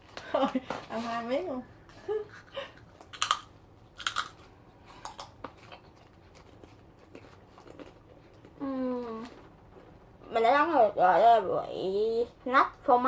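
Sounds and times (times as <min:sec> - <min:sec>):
faint chewing clicks: 0:02.9 - 0:08.6
crunchy snack being bitten: 0:03.0 - 0:08.6.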